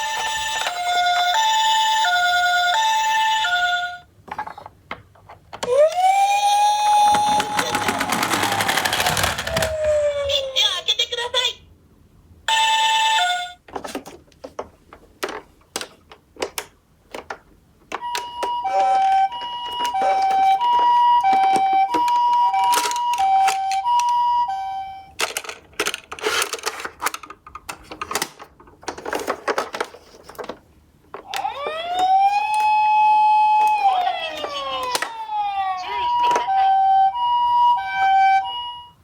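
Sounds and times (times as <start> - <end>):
wailing siren: 5.7 - 8.0, 9.3 - 10.5, 18.1 - 25.1, 31.2 - 39.0
hi-lo ambulance siren: 5.7 - 10.5, 18.0 - 25.1, 31.2 - 39.0
toy cars clicking and clattering: 7.0 - 9.8, 18.0 - 24.2, 25.2 - 30.6.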